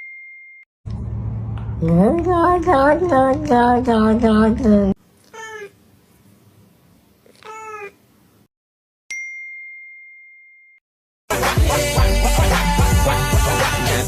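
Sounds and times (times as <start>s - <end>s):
cat meowing: 5.2s - 5.8s, 7.3s - 8.0s.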